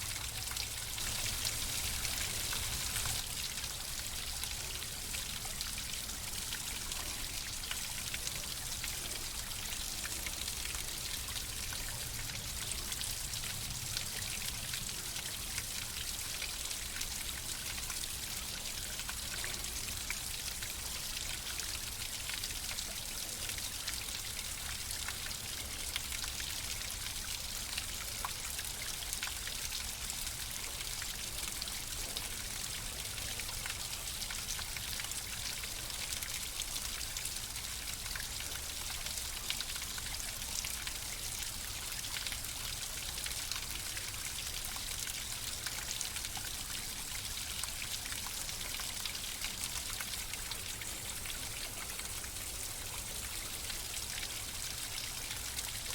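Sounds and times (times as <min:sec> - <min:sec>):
running water: 0:00.0 - 0:12.8
water splashes and drips: 0:00.0 - 0:55.9.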